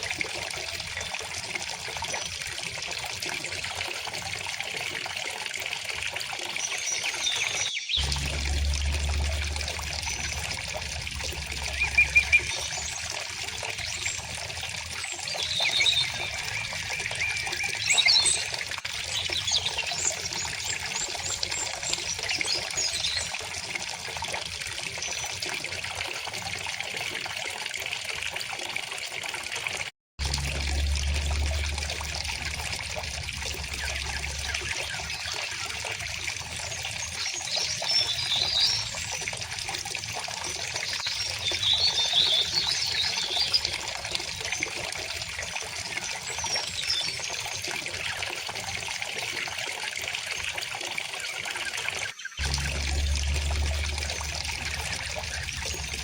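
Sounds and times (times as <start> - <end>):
stream trickling: 0.0 - 56.0
birds chirping: 6.6 - 23.3, 30.5 - 39.2, 52.2 - 56.0.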